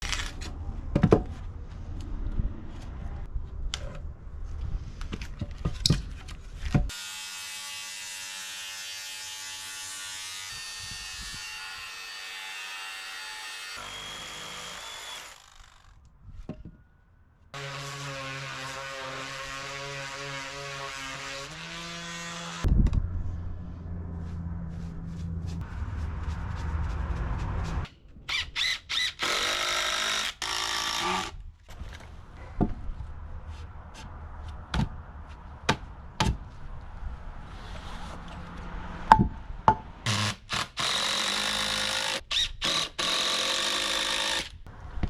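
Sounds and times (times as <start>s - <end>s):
power saw motor cutting wood: 6.9s - 16.0s, 40.1s - 44.6s.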